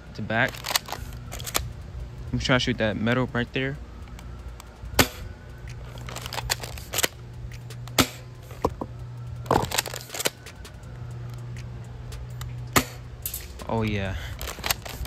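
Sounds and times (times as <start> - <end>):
pellets hitting steel target: 5.0 - 5.2, 8.0 - 8.2, 12.7 - 13.5.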